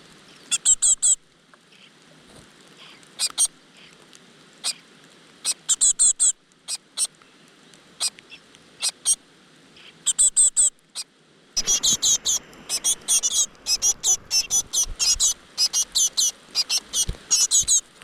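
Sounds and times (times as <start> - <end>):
nestlings cheeping: 11.6 - 17.9.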